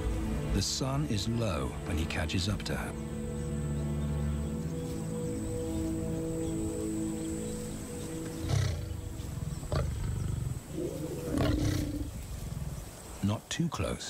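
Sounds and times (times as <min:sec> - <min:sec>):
background score music: 0:00.0 - 0:14.0
lion growling: 0:08.3 - 0:13.1.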